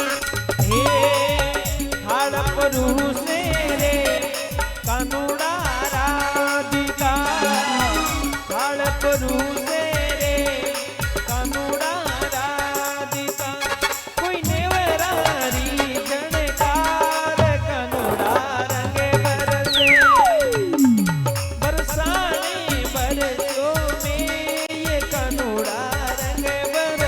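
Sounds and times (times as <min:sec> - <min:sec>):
steady drum beat: 0:00.0 - 0:27.0
ornamented melodic lead line: 0:19.6 - 0:22.4.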